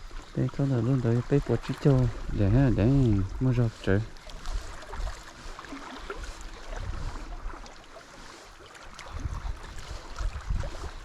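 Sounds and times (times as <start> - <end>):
wind buffeting microphone: 0.0 - 7.6, 8.9 - 11.0
water lapping against a boat: 0.0 - 11.0.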